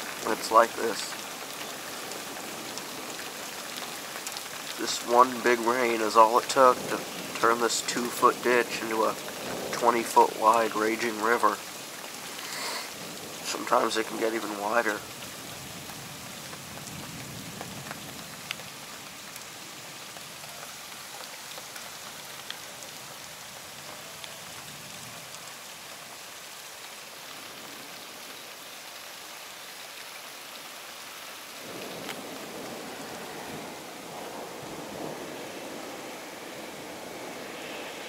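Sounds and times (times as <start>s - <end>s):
heavy rain pouring: 0.0s - 38.0s
low rushing noise: 35.0s - 38.0s.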